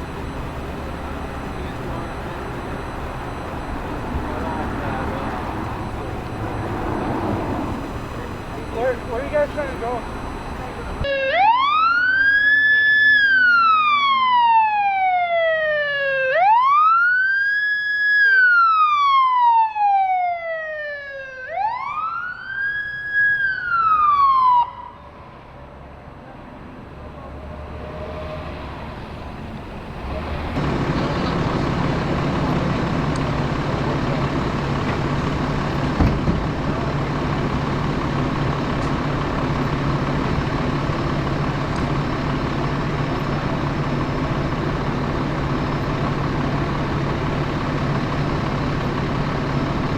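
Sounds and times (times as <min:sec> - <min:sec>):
heavy vehicle engine idling: 0:00.0 - 0:11.1, 0:28.7 - 0:49.9
emergency siren wailing: 0:00.0 - 0:49.9.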